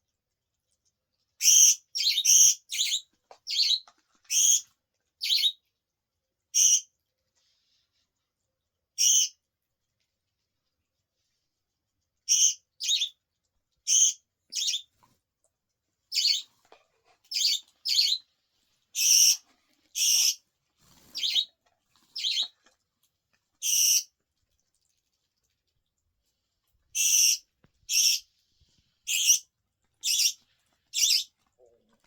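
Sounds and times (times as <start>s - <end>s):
budgerigar chirping: 1.4s - 4.6s, 5.2s - 5.6s, 9.0s - 9.3s, 12.3s - 13.1s, 13.9s - 14.9s, 16.1s - 16.5s, 17.3s - 18.2s, 19.0s - 19.4s, 20.0s - 20.4s, 21.2s - 21.5s, 22.2s - 22.5s, 23.6s - 24.1s, 27.0s - 28.2s, 29.1s - 29.4s, 30.0s - 30.4s, 31.0s - 31.3s.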